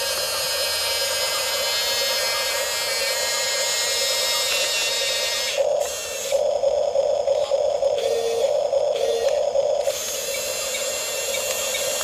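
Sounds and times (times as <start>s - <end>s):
toy bulldozer motors whining: 0.0s - 12.0s.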